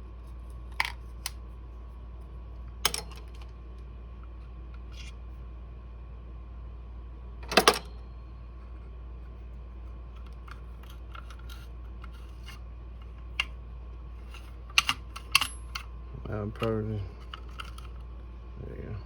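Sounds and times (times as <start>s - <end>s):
tools clicking on metal parts: 14.3s - 15.9s.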